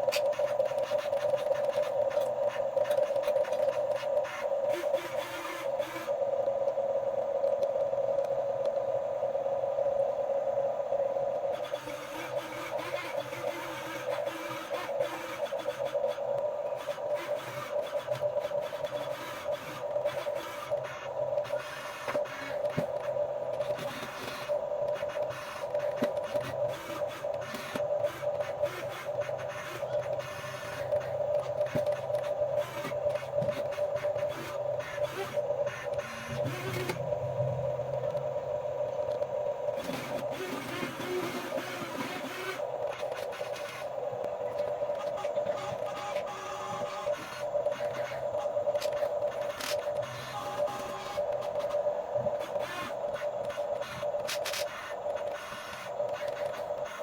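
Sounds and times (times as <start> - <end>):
clicking and scraping: 0.0 - 6.2, 11.6 - 37.0
electric motors whirring: 0.0 - 8.8, 11.3 - 57.0.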